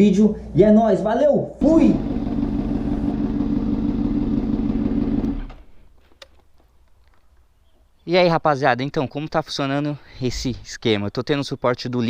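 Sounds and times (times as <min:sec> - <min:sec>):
motorcycle engine running: 0:01.6 - 0:05.6.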